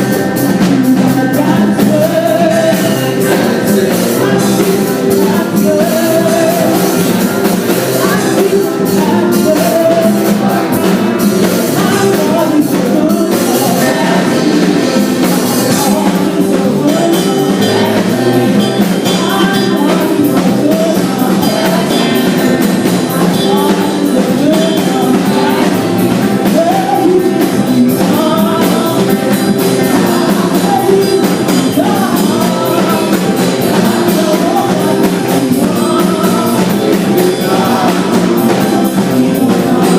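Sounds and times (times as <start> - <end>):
person singing: 0.0 - 39.9
rock band playing: 0.0 - 39.9.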